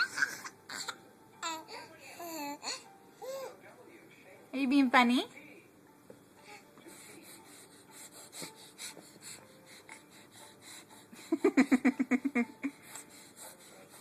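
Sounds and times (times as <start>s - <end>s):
faint breathing: 6.4s - 11.4s, 12.7s - 14.0s.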